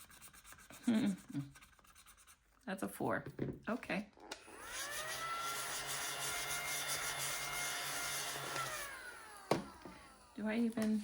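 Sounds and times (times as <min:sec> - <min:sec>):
small electric motor spinning: 0:04.3 - 0:11.0.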